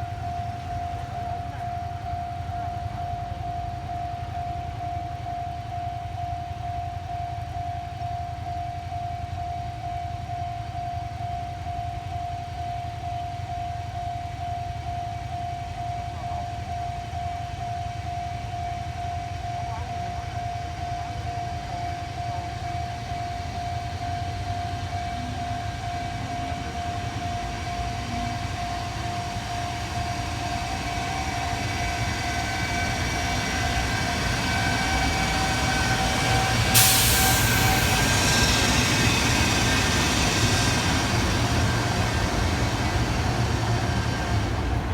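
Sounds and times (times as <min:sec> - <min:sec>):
steady high tone: 0:18.8 - 0:44.9
approaching train rumble: 0:20.1 - 0:44.9
sudden loud hiss: 0:36.0 - 0:43.0.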